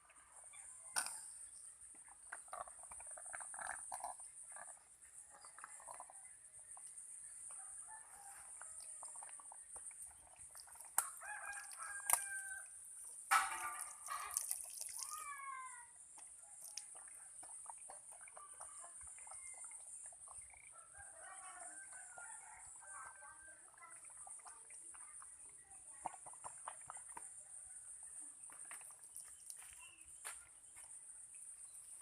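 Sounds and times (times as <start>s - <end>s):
rooster crowing: 11.2s - 12.7s.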